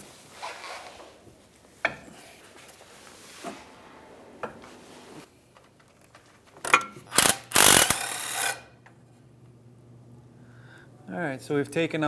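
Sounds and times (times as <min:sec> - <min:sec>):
socket ratchet clicking: 0:06.7 - 0:08.6.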